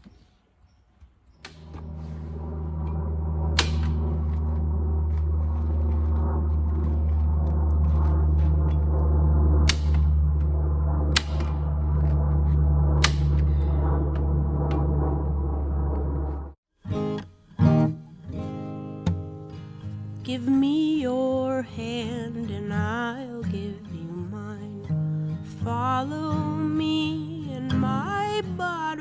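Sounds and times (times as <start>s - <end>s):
machine humming: 1.4s - 16.6s
sharp cracks: 2.8s - 16.1s.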